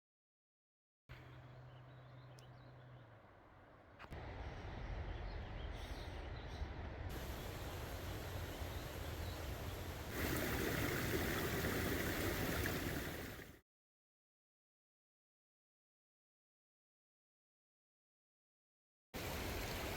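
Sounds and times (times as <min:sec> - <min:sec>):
wind rumble on microphone: 0:04.2 - 0:13.5
creek water rushing: 0:07.1 - 0:13.6, 0:19.2 - 0:19.9.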